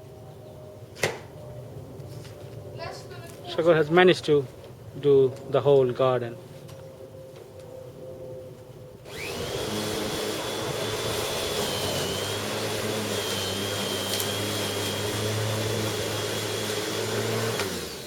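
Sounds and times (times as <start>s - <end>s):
electric lawnmower motor whining: 9.0s - 18.0s.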